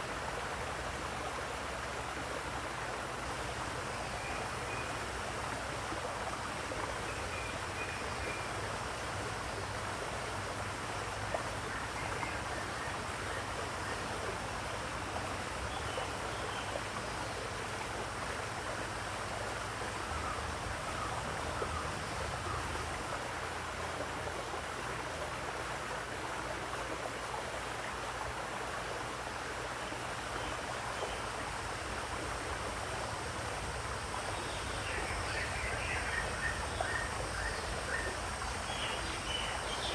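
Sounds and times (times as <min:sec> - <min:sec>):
running water rushing: 0:00.0 - 0:39.9.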